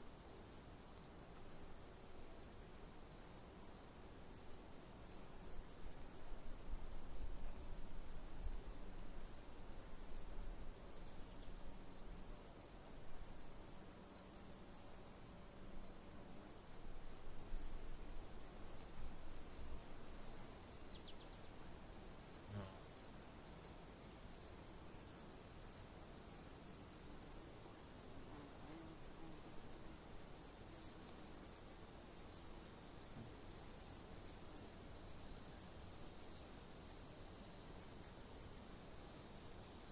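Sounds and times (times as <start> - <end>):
insect rapid chirps: 16.0 - 23.6.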